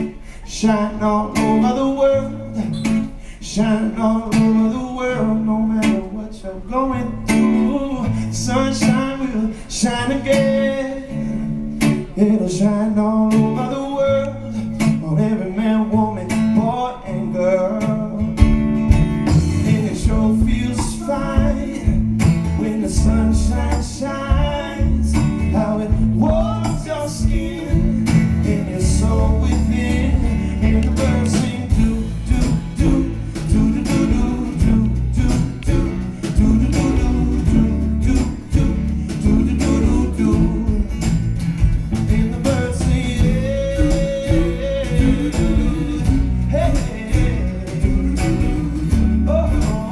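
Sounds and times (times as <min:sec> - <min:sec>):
acoustic guitar: 0:00.0 - 0:49.9
person singing: 0:19.4 - 0:41.2, 0:41.9 - 0:49.9.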